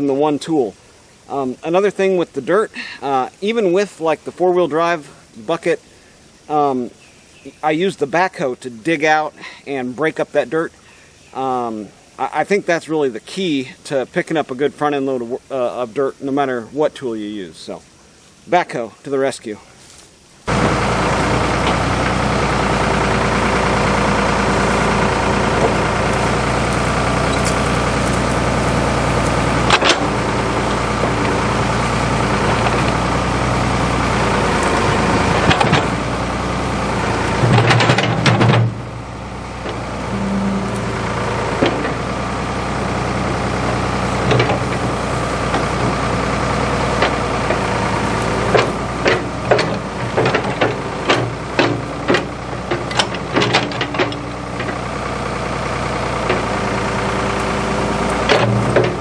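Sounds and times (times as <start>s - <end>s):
backhoe engine running: 20.5s - 59.0s
metal knocks and clanks: 25.4s - 31.8s, 34.9s - 36.0s, 37.2s - 38.8s, 39.6s - 42.1s, 44.3s - 46.0s, 48.5s - 54.8s, 58.1s - 59.0s.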